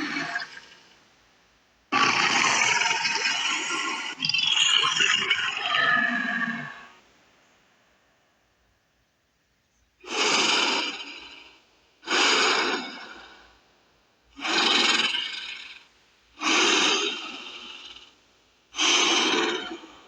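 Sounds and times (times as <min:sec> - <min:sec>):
hoarse breathy creature calls: 0:00.0 - 0:00.8, 0:01.9 - 0:07.0, 0:10.0 - 0:13.6, 0:14.4 - 0:18.2, 0:18.8 - 0:20.0.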